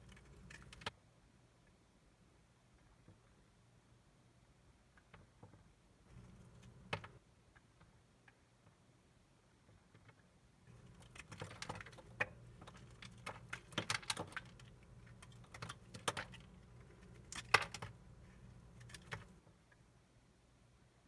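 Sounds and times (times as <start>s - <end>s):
dry soap crackling: 0.0s - 0.9s, 6.1s - 7.2s, 10.7s - 19.4s.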